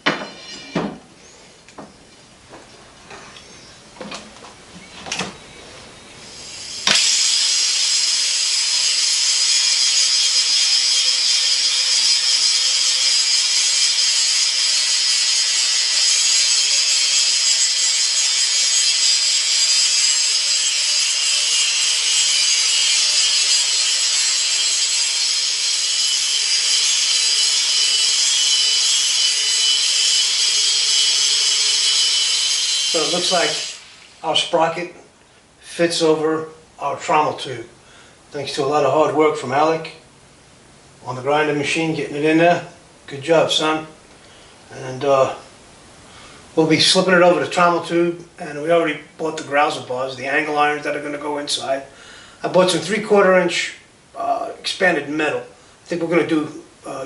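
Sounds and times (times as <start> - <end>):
grinder grinding metal: 0.0 - 1.4, 6.3 - 34.8.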